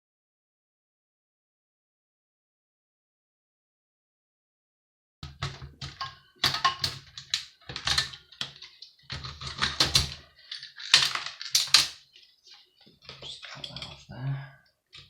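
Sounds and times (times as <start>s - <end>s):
clattering of metal and plastic parts: 5.2s - 14.0s.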